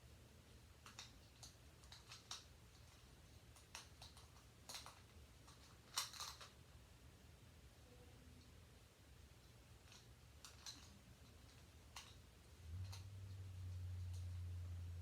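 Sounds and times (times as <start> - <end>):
plastic puzzle cube clicking: 0.8 - 3.0, 3.6 - 6.5, 9.9 - 10.9.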